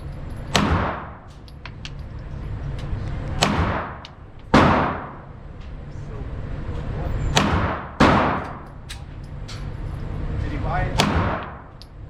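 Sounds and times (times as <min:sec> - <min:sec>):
loud echoing gunshots: 0:00.5 - 0:01.3, 0:03.4 - 0:05.4, 0:07.4 - 0:08.6, 0:10.9 - 0:11.8.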